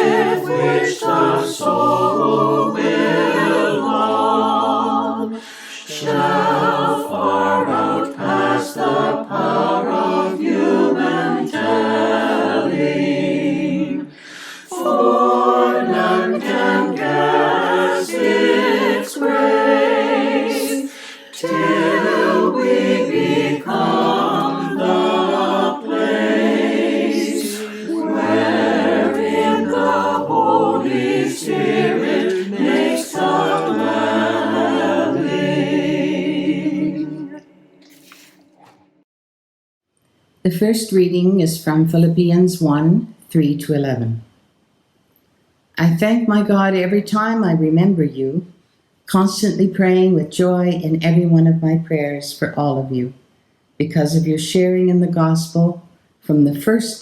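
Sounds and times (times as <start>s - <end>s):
choir singing unaccompanied: 0.0s - 37.8s.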